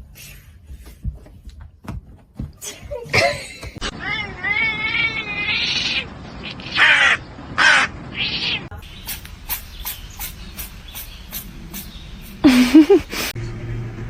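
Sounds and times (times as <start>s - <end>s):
harsh animal calls: 4.0s - 12.0s.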